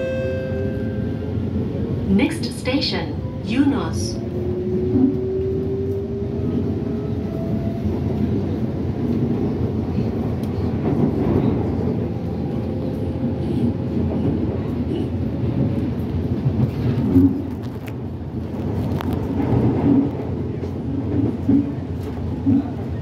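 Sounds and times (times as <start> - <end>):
metro train rumble: 0.0 - 23.0.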